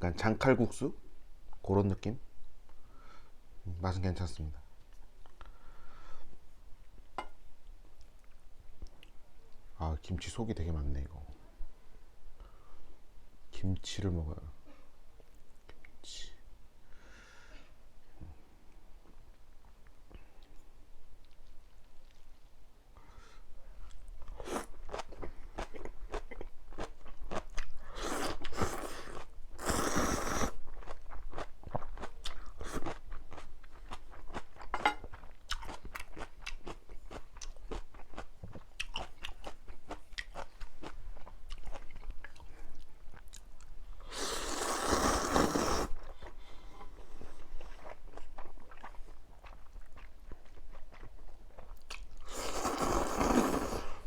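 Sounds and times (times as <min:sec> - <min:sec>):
slurping noodles: 0:27.9 - 0:30.6, 0:44.1 - 0:46.1, 0:52.2 - 0:54.0
wet crunching and chewing: 0:47.5 - 0:53.7.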